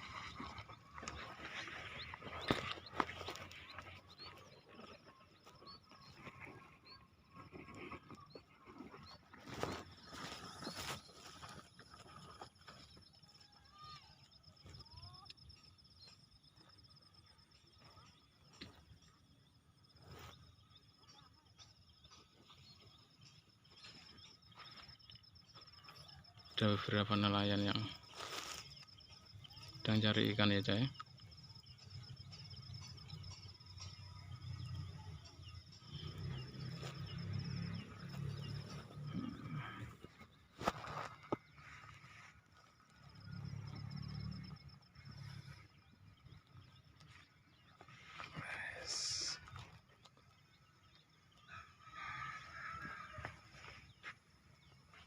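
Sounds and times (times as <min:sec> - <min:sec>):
bird calls: 0:00.0 - 0:16.7
bird chirps: 0:00.0 - 0:52.9
insects trilling: 0:00.0 - 0:55.0.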